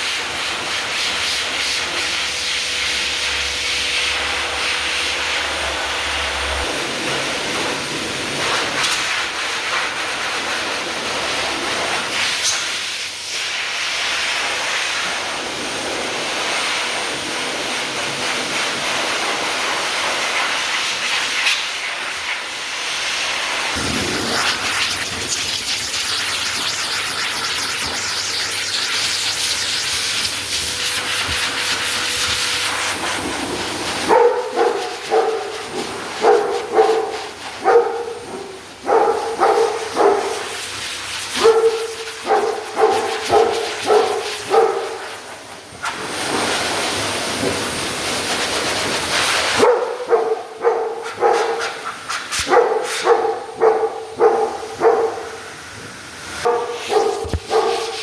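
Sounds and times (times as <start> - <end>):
pet blow dryer hissing: 0.0 - 58.0.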